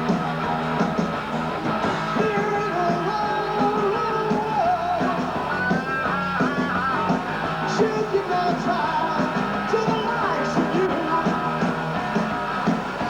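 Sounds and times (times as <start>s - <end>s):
rock band playing live: 0.0s - 13.0s
person singing: 2.2s - 11.8s.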